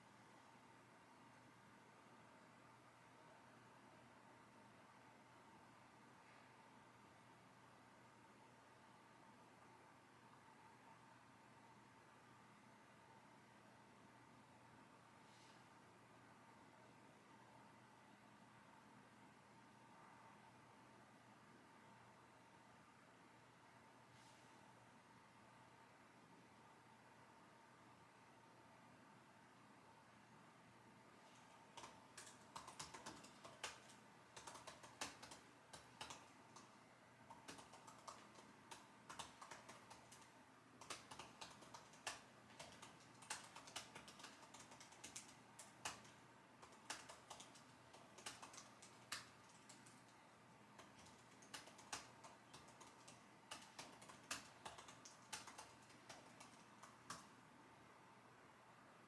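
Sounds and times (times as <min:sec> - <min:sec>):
keyboard typing: 0:31.3 - 0:57.4.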